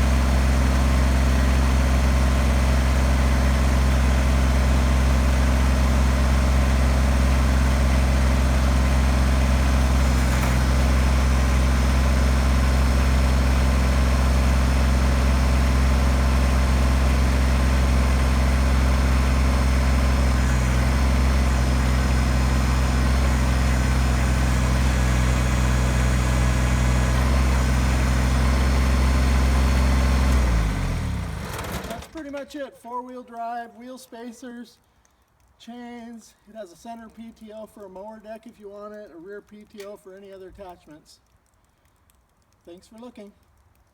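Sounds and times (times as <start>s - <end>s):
tractor diesel engine running: 0.0s - 32.4s.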